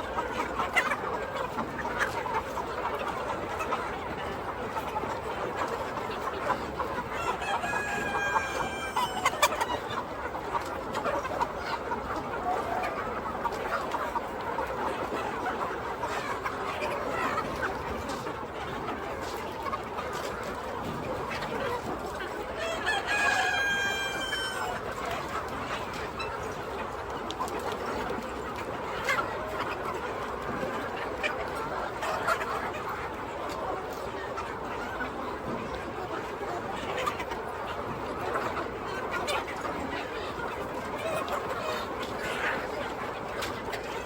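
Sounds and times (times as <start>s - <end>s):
chickens clucking: 0.0s - 44.0s
rooster crowing: 7.4s - 9.2s, 22.6s - 24.7s.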